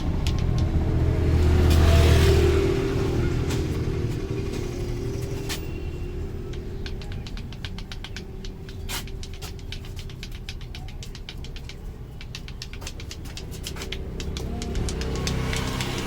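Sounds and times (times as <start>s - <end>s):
taps and clicks on scalp: 0.0s - 2.0s, 6.4s - 16.0s.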